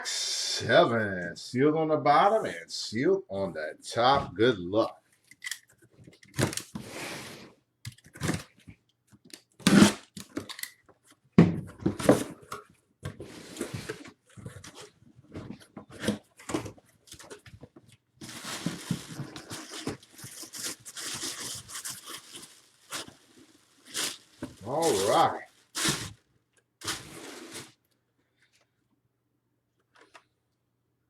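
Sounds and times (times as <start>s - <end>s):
box seals tearing: 9.6s - 10.6s, 18.2s - 26.2s, 26.8s - 27.7s
cardboard scraping and knocking: 18.2s - 20.9s
packing material crinkling: 18.2s - 26.2s, 26.8s - 27.8s.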